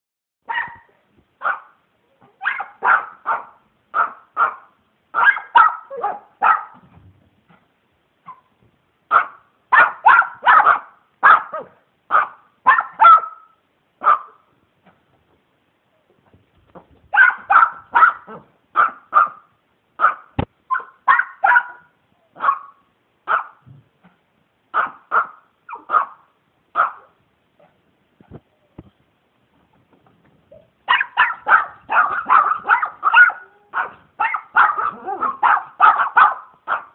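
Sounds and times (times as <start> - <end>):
dogs barking: 2.4 - 6.8, 9.1 - 14.4, 17.2 - 19.4, 20.0 - 23.6, 24.7 - 26.2, 26.8 - 27.1, 30.9 - 36.9.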